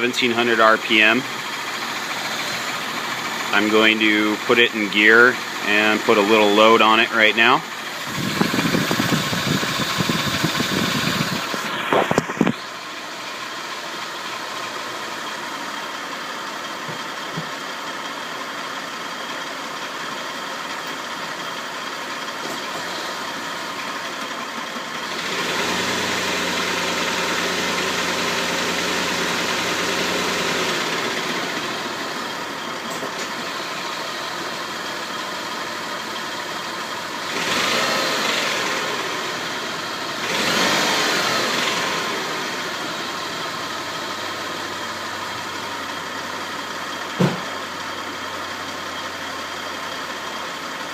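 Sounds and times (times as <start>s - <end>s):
car engine idling: 0.0s - 50.9s
knocks: 47.2s - 47.5s.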